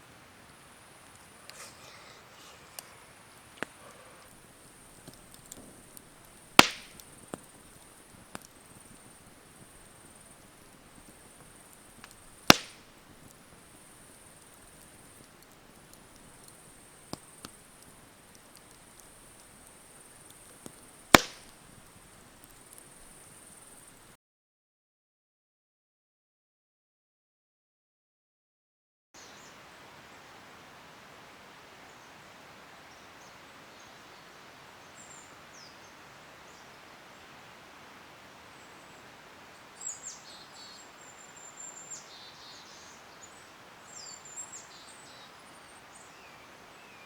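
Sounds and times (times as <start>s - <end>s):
sharp chopping strikes: 6.6s - 7.0s, 12.5s - 12.8s, 21.2s - 21.5s.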